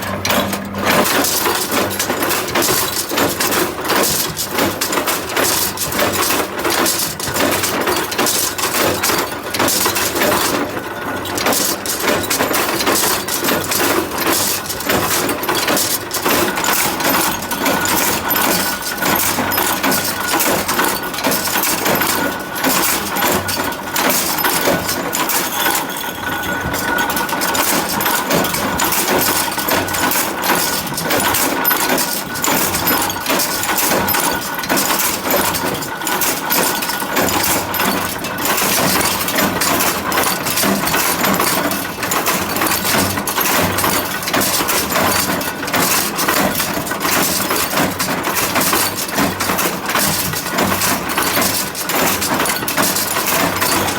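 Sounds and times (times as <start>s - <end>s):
metallic clicks and clinks: 0.0s - 10.6s, 11.2s - 53.9s.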